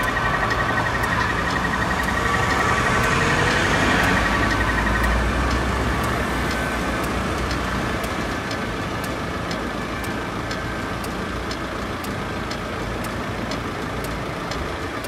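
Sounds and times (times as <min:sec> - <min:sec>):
faint police siren: 0:00.0 - 0:11.5
road traffic: 0:00.0 - 0:15.0
vehicle passing with low rumble: 0:00.0 - 0:15.0.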